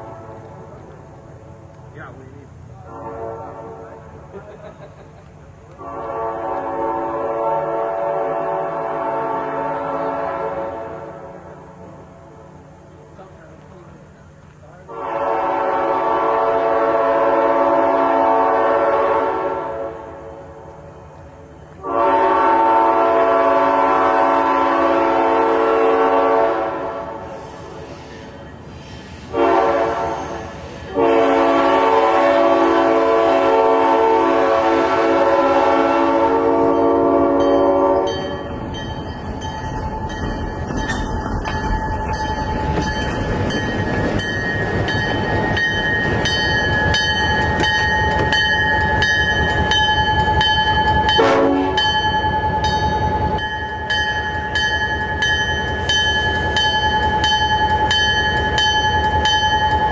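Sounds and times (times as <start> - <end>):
locomotive air horn: 0.0 - 0.7, 2.8 - 4.1, 5.8 - 11.8, 14.9 - 20.5, 21.8 - 28.2, 29.2 - 38.3, 51.1 - 52.0
train rumbling and clattering: 0.0 - 59.9
locomotive bell ringing: 36.6 - 59.9.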